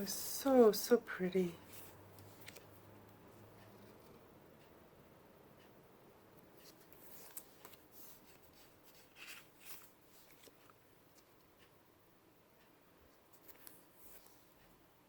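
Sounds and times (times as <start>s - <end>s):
paper sticker sheets rustling: 6.6s - 11.3s.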